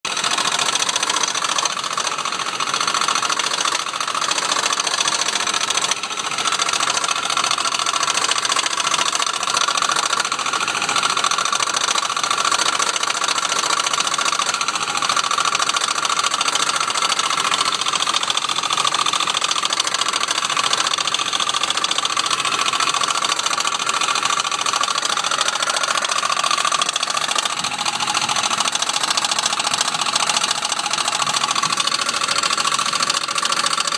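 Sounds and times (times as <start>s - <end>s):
car engine whining: 16.8s - 33.9s.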